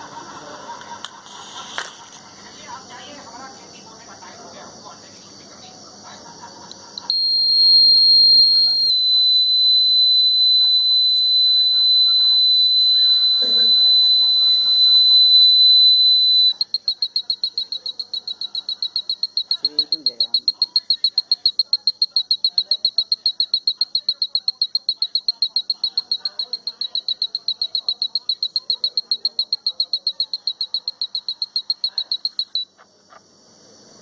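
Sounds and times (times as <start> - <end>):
fire alarm buzzer: 7.1 - 32.7.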